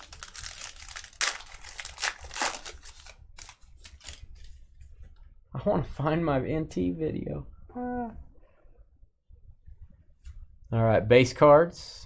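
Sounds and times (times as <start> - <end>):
packaging crinkling and tearing: 0.0 - 4.6.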